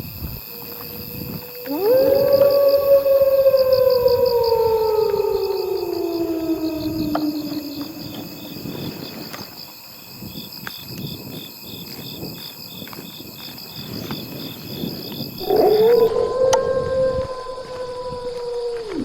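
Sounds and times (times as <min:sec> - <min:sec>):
pulsing insect chirps: 0:00.0 - 0:10.5, 0:15.2 - 0:19.0
insects trilling: 0:00.0 - 0:19.0.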